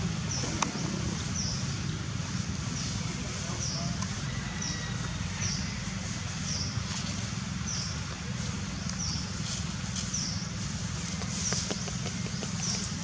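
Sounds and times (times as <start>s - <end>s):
steady low rumble: 0.0s - 3.6s.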